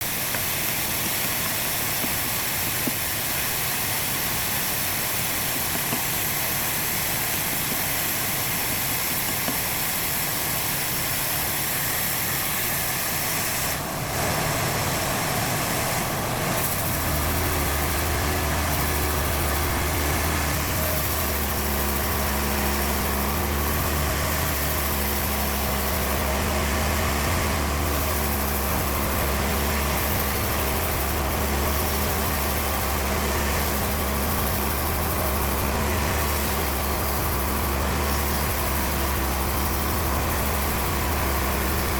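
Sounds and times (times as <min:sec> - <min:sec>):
sawmill machinery hiss: 0:00.0 - 0:41.9
low engine-like hum: 0:12.5 - 0:41.9.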